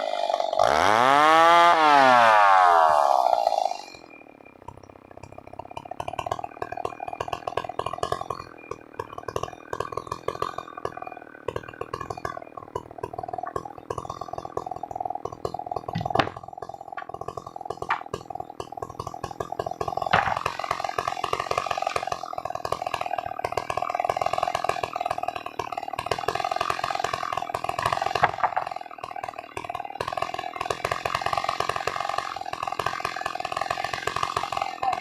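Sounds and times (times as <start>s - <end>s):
chainsaw engine running: 0.0s - 35.0s.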